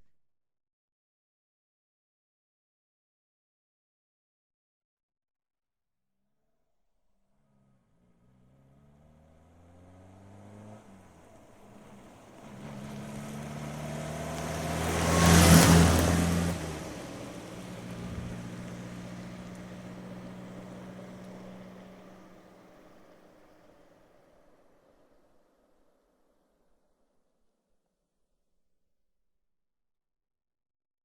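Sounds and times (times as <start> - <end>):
car engine accelerating: 7.4 - 23.6
road noise of passing car: 7.4 - 25.7.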